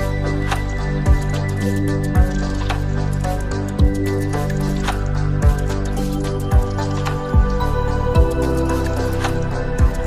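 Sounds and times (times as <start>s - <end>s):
calm background music: 0.0s - 10.0s.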